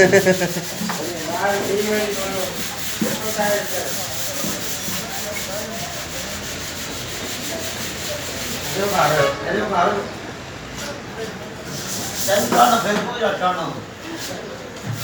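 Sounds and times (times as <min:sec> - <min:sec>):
rasping sanding noise: 0:00.0 - 0:09.3, 0:11.7 - 0:12.9.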